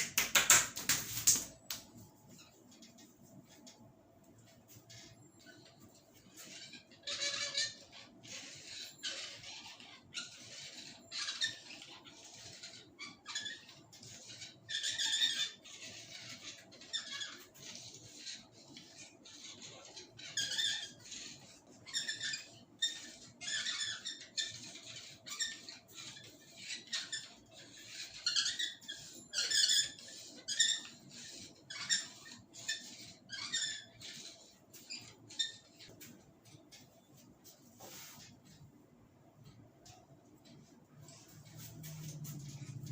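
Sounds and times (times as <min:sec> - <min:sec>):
hands rubbing oiled hair: 0:00.1 - 0:01.8.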